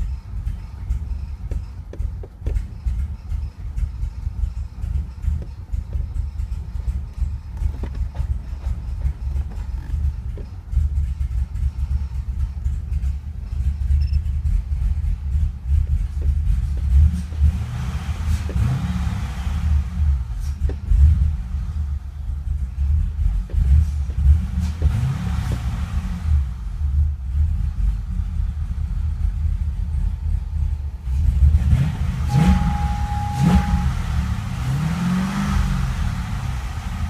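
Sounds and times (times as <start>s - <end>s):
car engine misfiring: 0.0s - 37.0s
steady beep: 14.0s - 14.2s, 31.8s - 36.3s.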